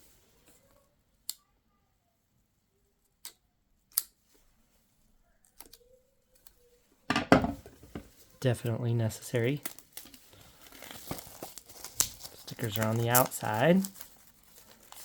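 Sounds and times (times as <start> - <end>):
plastic wrap crinkling and tearing: 9.1 - 15.0
packaging clicks: 9.6 - 15.0.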